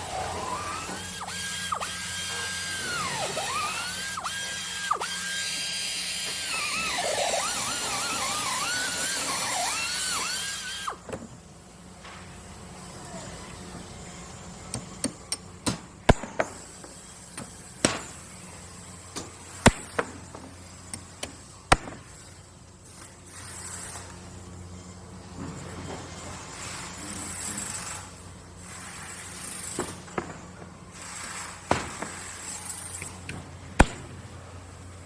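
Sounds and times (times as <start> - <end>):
power drill whining: 0.0 - 11.1.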